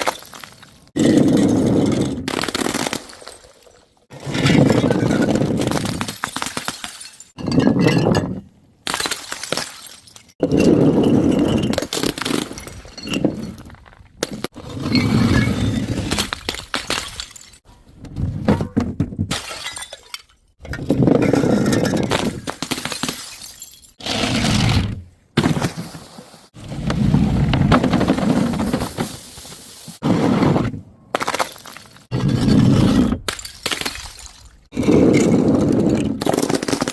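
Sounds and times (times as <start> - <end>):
glass bottles smashing: 19.3 - 20.4, 22.1 - 24.0.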